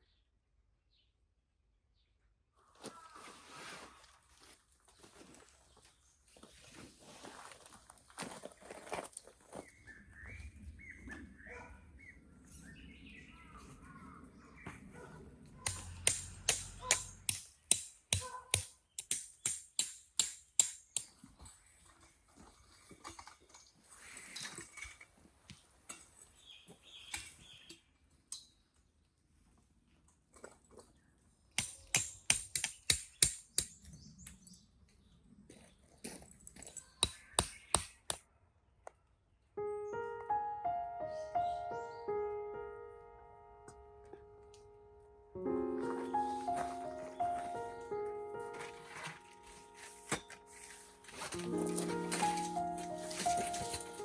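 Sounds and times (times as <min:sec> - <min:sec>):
birds chirping: 0:09.6 - 0:19.2
sharp metallic strikes: 0:15.7 - 0:21.1.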